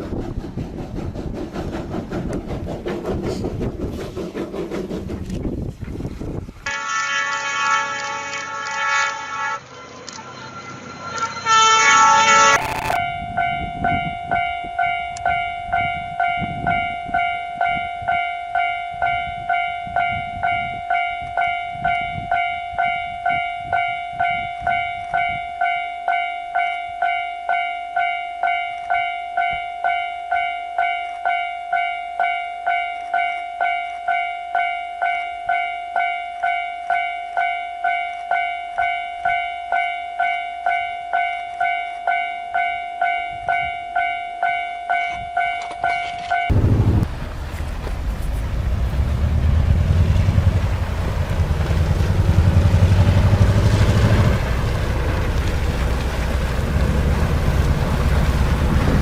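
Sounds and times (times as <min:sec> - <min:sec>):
low train rumble: 0:00.0 - 0:30.8, 0:33.6 - 0:59.0
crossing warning bell ringing: 0:06.7 - 0:46.7.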